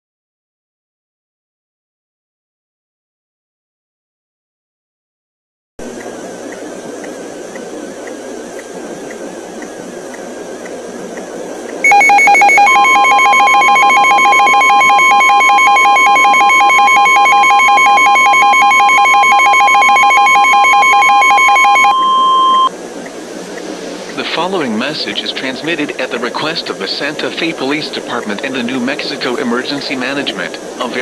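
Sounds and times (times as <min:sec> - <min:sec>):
static hiss: 0:05.8 - 0:31.0
steady single-pitch tone: 0:11.8 - 0:22.8
warbling electronic alert tone: 0:11.9 - 0:22.7.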